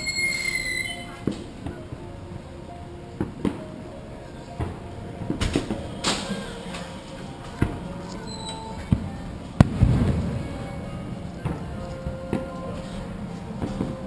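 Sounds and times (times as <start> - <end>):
low rolling rumble: 8.6 - 14.0
fireworks bangs and cracks: 8.9 - 10.8.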